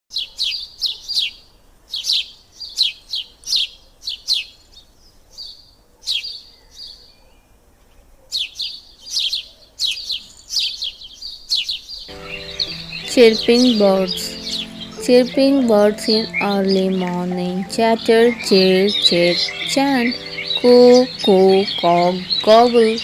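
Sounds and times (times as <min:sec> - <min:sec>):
songbird chirping: 0:08.4 - 0:23.0.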